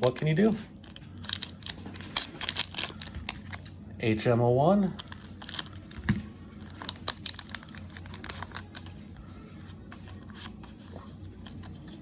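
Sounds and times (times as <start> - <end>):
foil wrapper crinkling and tearing: 0.0 - 3.8, 5.0 - 9.2.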